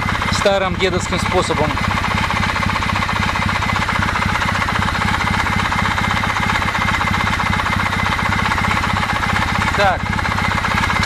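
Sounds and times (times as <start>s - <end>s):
motorcycle engine idling: 0.0s - 11.0s
rapid knocking clatter: 0.0s - 11.0s.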